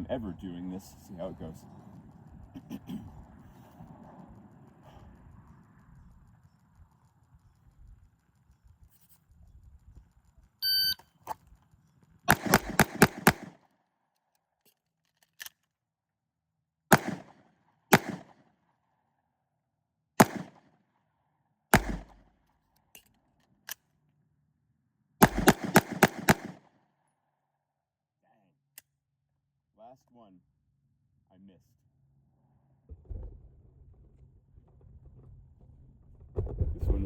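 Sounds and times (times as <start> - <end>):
shot timer beep: 10.6 - 11.0
pistol shots: 12.3 - 13.6, 16.9 - 18.4, 20.2 - 20.6, 21.7 - 22.2, 25.2 - 26.6.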